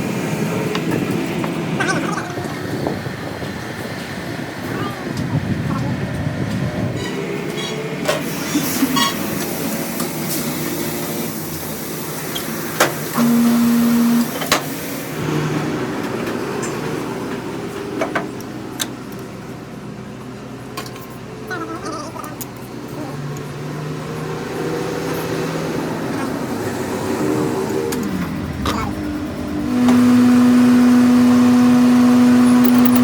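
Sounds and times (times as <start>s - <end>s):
loud buzz: 13.1s - 14.5s, 29.4s - 33.0s
lathe running: 13.1s - 15.8s, 29.2s - 33.0s
metallic clicks and knocks: 32.6s - 33.0s.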